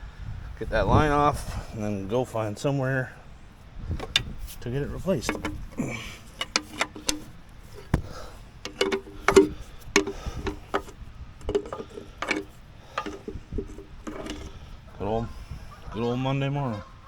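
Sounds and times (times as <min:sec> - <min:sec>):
wrench clinking on metal fitting: 0:04.0 - 0:14.8.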